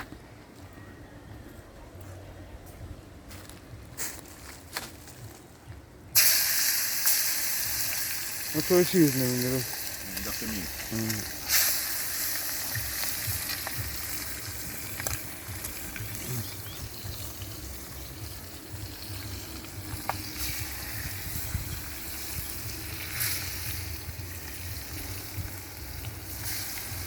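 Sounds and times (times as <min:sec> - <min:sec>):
curry sizzling in hot oil: 0:06.2 - 0:27.0.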